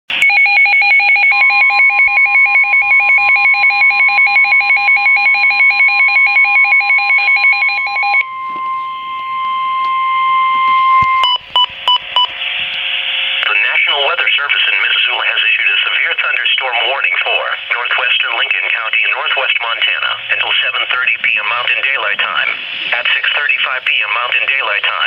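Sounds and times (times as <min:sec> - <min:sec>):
steady high alarm tone: 0:00.1 - 0:25.0
short beeps: 0:07.4 - 0:12.5.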